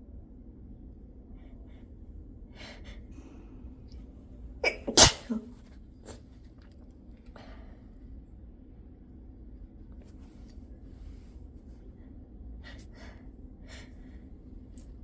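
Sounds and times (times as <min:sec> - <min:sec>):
woman sneezing: 0:04.6 - 0:05.6.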